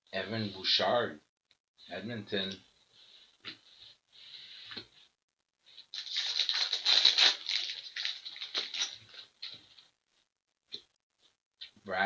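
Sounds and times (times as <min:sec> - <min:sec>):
card packaging crinkling: 0:05.8 - 0:09.6.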